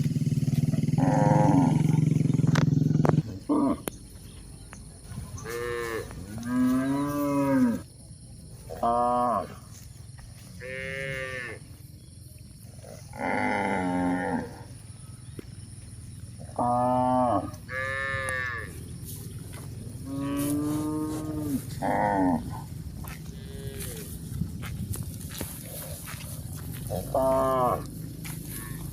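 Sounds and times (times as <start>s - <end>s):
cattle mooing: 0.9s - 3.9s, 5.4s - 7.8s, 12.8s - 14.7s, 16.4s - 18.8s, 20.0s - 24.1s, 26.7s - 28.9s.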